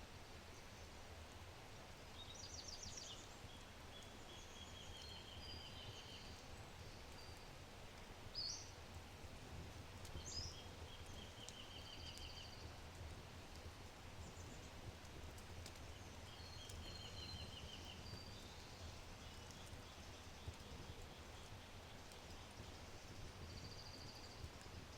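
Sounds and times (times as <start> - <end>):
wood fire crackling: 0.0 - 24.9
birds singing: 15.9 - 24.6.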